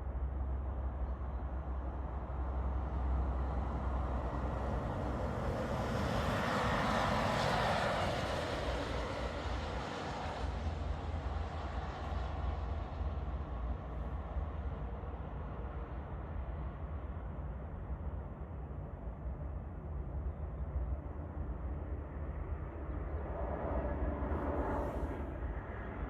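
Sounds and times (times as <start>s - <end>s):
wind rumble on microphone: 0.0s - 26.0s
jet airliner passing: 22.2s - 26.0s.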